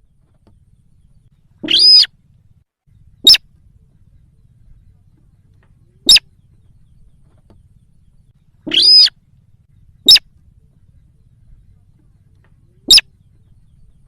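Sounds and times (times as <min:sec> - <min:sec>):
bird lure call: 0:01.4 - 0:02.2, 0:03.1 - 0:03.6, 0:05.6 - 0:09.2, 0:09.8 - 0:10.4, 0:12.4 - 0:14.0.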